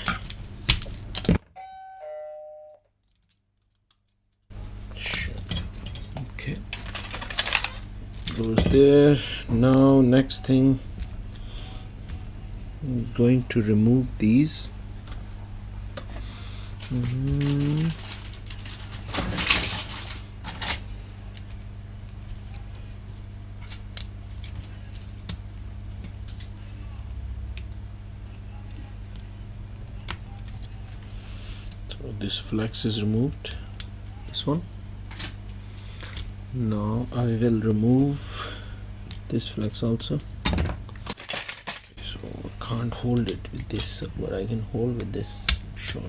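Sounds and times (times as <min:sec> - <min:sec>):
two-note electronic chime: 0:01.6 - 0:02.8.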